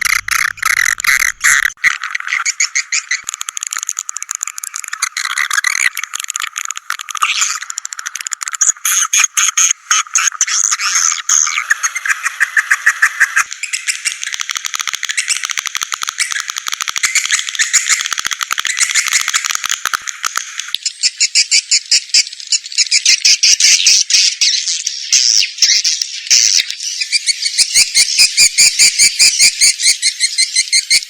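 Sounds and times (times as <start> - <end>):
swiftlets twittering chirps: 0.0 - 3.3.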